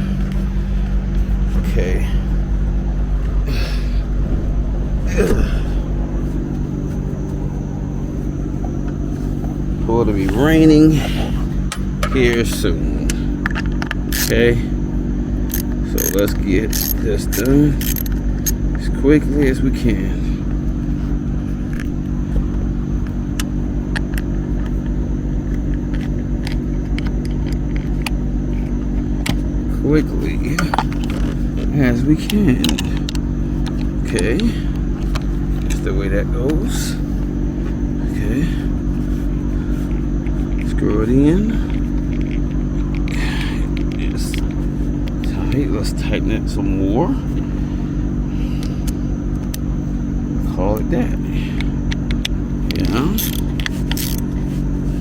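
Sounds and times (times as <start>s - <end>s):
low engine hum: 0.0s - 55.0s
breathy exhales: 3.2s - 7.5s, 43.1s - 43.8s, 47.5s - 49.1s, 51.2s - 51.8s.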